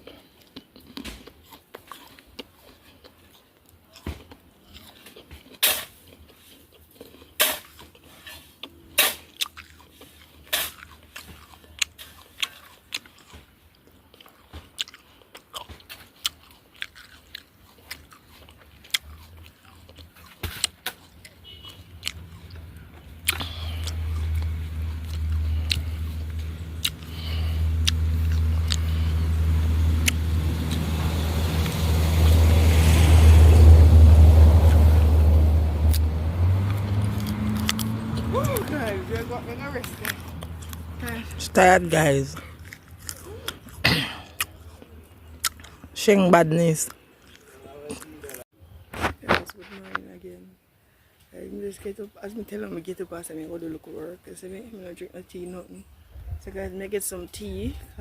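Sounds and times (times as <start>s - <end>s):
gravel crunching and scraping: 0.0s - 46.0s
motor vehicle rumbling: 18.3s - 50.6s.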